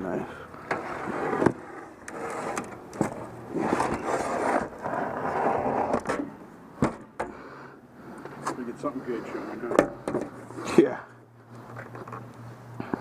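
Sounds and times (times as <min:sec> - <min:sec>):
objects scraping and shuffling: 0:00.6 - 0:07.4.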